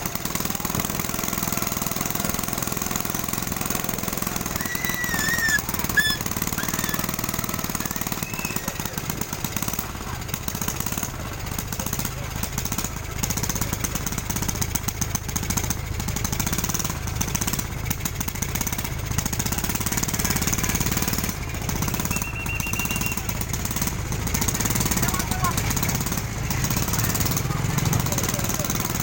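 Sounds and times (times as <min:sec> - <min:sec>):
small motor rattling and humming: 0:00.0 - 0:29.0
short high beep: 0:22.1 - 0:23.2.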